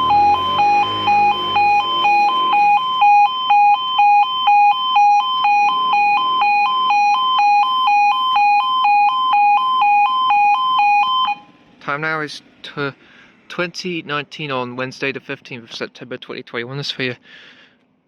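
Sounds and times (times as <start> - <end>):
two-tone electronic warning alarm: 0.0 - 11.5.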